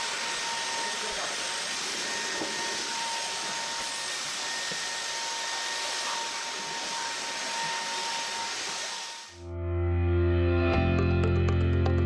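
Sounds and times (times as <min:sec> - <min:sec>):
vacuum cleaner running: 0:00.0 - 0:09.4
music: 0:09.4 - 0:12.0.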